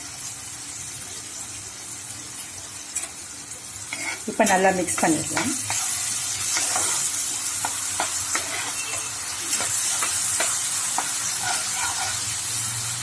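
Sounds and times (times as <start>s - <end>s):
paste sizzling in hot oil: 0.0s - 13.0s
utensil scraping pan: 3.9s - 12.4s.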